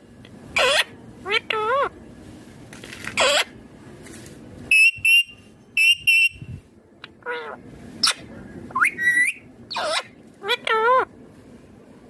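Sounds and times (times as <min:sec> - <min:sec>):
parakeet screeching: 0:00.6 - 0:01.9, 0:03.2 - 0:03.5, 0:07.2 - 0:11.1.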